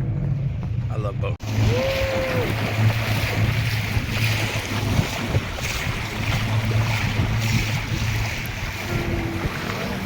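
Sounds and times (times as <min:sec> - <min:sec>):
boat engine droning: 0:00.0 - 0:10.0
wind buffeting microphone: 0:00.0 - 0:10.0
rushing water: 0:00.2 - 0:10.0.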